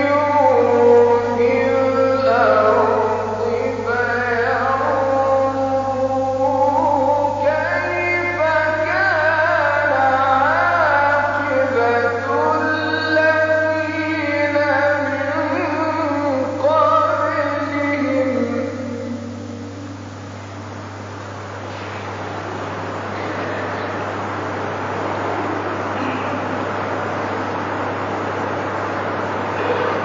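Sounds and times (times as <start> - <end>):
man chanting melodic recitation: 0.0 - 19.5.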